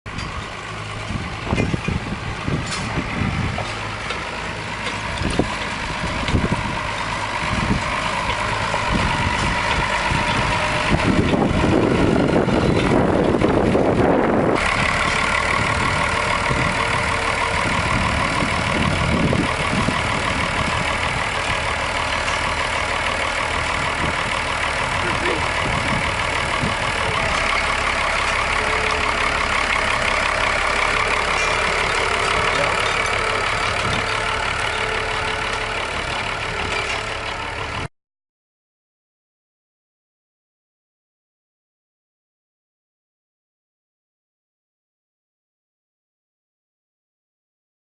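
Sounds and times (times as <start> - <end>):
tractor diesel engine running: 0.1 - 37.9.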